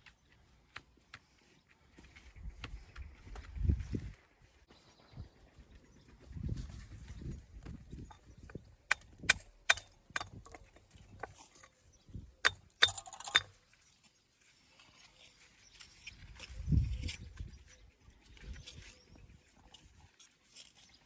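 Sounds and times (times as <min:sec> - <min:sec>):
stone struck with ringing knocks: 0:08.9 - 0:10.6, 0:12.5 - 0:13.5.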